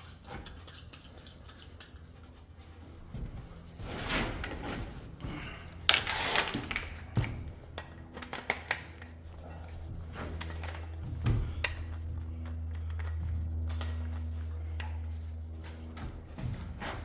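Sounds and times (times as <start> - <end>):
drill chuck rattling: 5.9 - 7.2.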